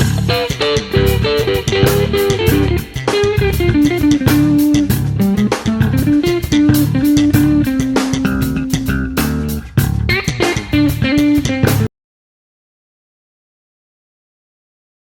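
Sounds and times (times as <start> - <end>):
bass guitar: 0.0 - 11.9
electric guitar melody: 0.0 - 11.9
steady drum beat: 0.0 - 11.9.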